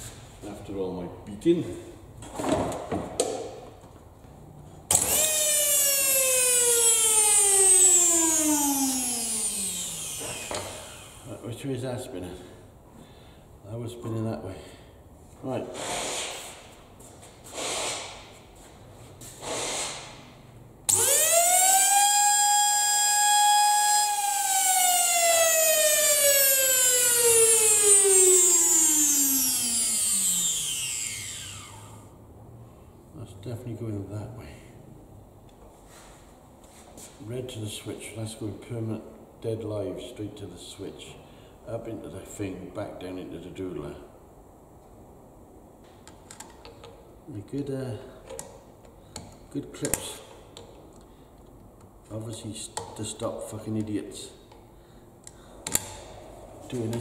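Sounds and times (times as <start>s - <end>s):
vacuum cleaner motor whining: 4.9s - 11.2s, 20.9s - 32.0s.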